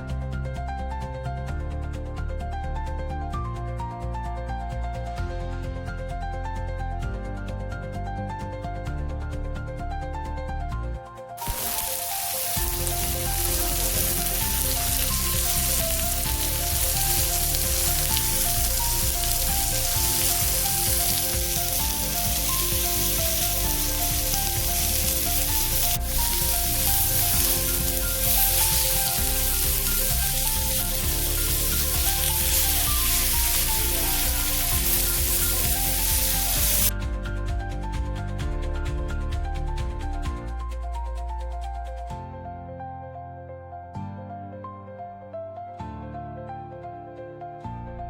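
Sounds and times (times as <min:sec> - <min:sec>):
background music: 0:00.0 - 0:48.0
food sizzling on a griddle: 0:11.4 - 0:36.9.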